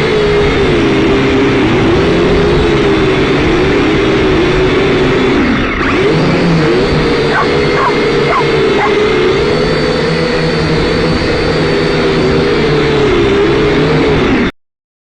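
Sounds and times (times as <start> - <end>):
drone propellers buzzing: 5.6 - 12.0.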